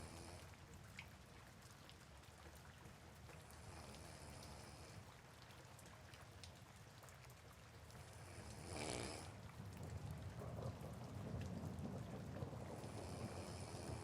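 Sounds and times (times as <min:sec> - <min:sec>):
soft steady rain: 0:00.0 - 0:14.0
person snoring: 0:08.4 - 0:09.3, 0:13.0 - 0:14.0.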